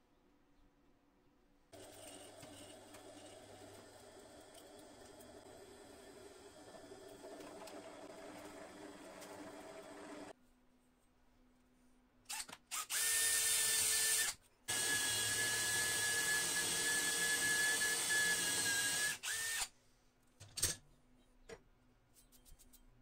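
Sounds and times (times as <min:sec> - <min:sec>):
electric drill whine: 0:12.8 - 0:19.7.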